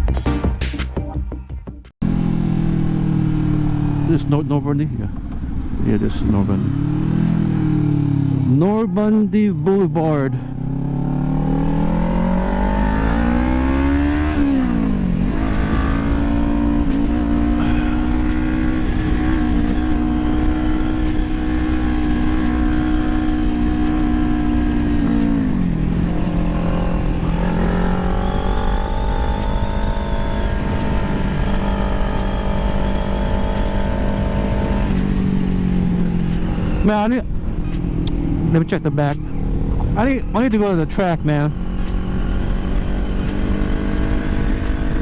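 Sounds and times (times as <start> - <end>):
motorcycle engine shifting gears: 2.0 - 45.0
wind rumbling on microphone: 39.1 - 40.3.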